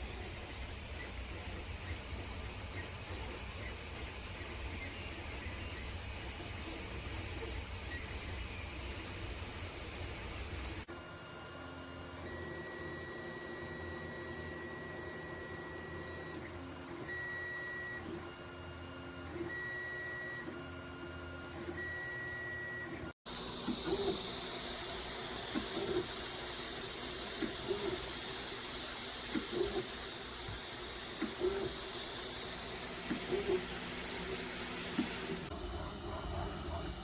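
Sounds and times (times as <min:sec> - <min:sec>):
stepper motors whining: 0:23.3 - 0:35.5.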